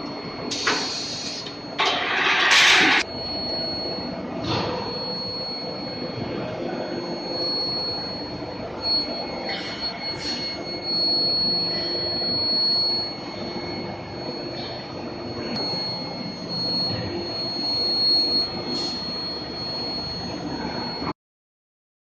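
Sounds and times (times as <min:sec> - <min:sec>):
high-pitched whine: 0:00.0 - 0:21.1
machinery noise: 0:00.5 - 0:03.0.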